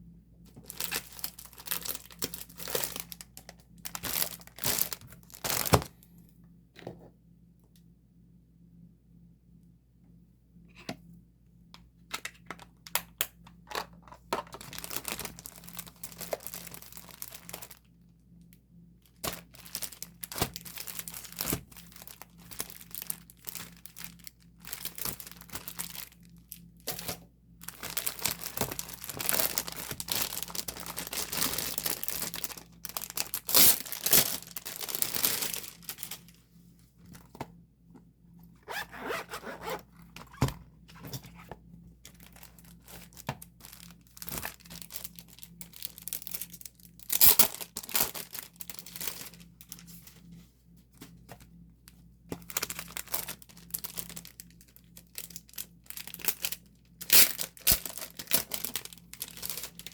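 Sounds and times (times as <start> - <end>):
thin plastic crinkling: 0.5 - 6.0, 12.2 - 17.9, 19.1 - 36.4, 42.1 - 50.3, 52.3 - 59.9.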